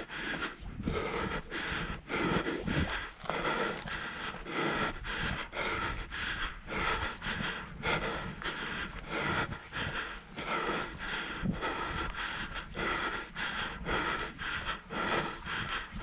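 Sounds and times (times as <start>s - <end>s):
person panting: 0.0s - 16.0s.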